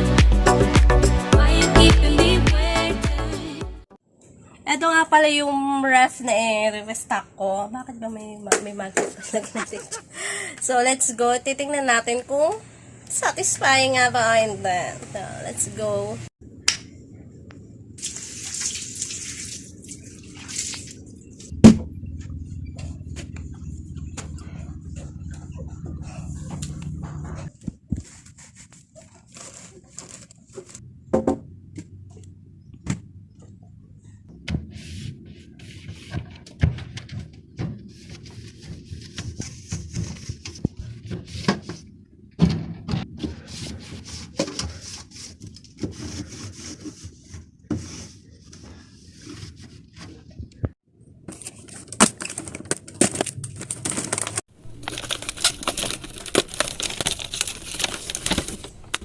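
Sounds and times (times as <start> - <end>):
items knocking and clinking: 51.3 - 59.0.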